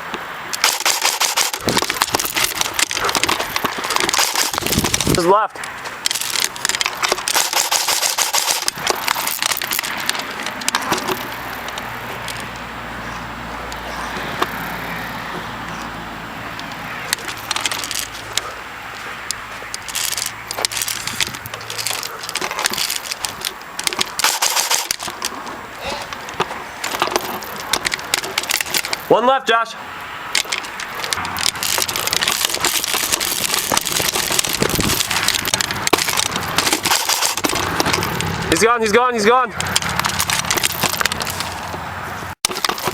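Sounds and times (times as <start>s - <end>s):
airsoft guns firing: 0.6s - 2.6s, 7.1s - 8.7s, 24.2s - 25.0s.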